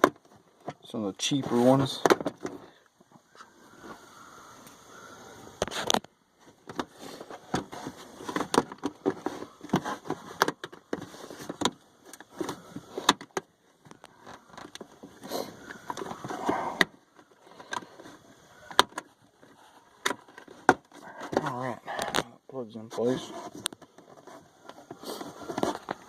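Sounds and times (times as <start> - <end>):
hands clicking and knocking parts: 5.6 - 22.3.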